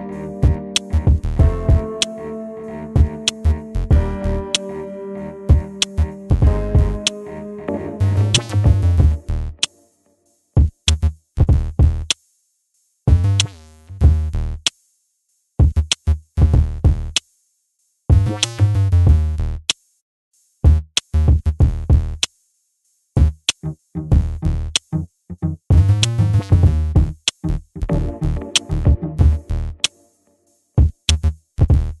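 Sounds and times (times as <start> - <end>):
electronic music with drum-machine beats: 0.0 - 9.7, 23.6 - 29.9.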